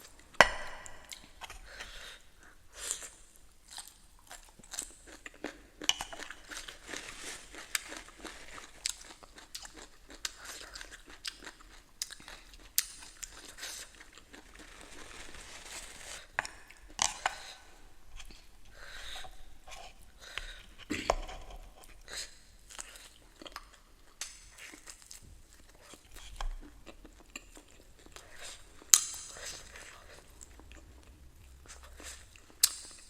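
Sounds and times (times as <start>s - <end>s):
chewing and crunching: 0.1s - 18.5s, 19.1s - 33.0s.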